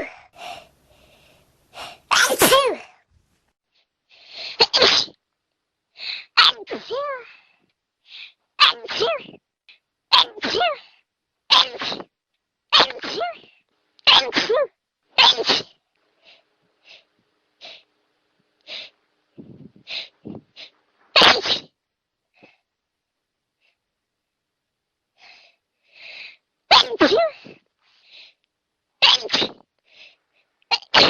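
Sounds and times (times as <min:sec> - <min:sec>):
person sneezing: 0:01.8 - 0:03.0, 0:04.5 - 0:05.2, 0:10.1 - 0:10.8, 0:11.5 - 0:12.1, 0:12.8 - 0:13.5, 0:14.1 - 0:15.8, 0:21.2 - 0:21.7, 0:26.7 - 0:27.6, 0:29.0 - 0:29.6.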